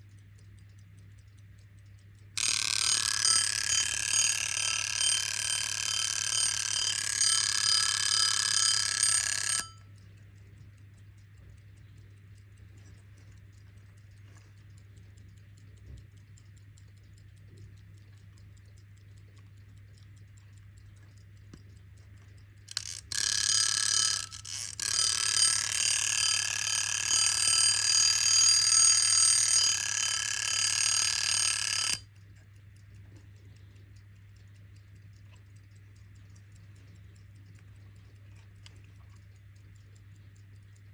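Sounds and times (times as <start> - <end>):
clock ticking faintly: 0.0 - 40.9
alarm clock bell ringing: 2.4 - 9.8, 22.7 - 32.0.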